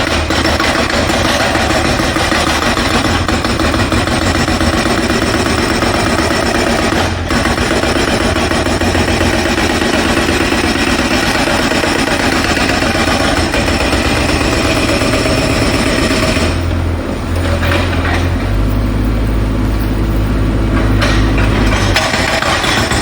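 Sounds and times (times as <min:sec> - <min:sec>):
jackhammer hammering: 0:00.0 - 0:19.0, 0:19.6 - 0:23.0.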